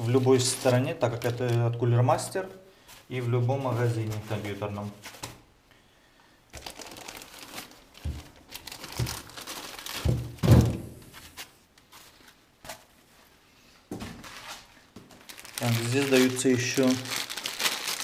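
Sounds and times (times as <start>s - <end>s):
plastic packaging crinkling: 0.0s - 2.4s, 6.5s - 12.4s, 14.2s - 18.0s.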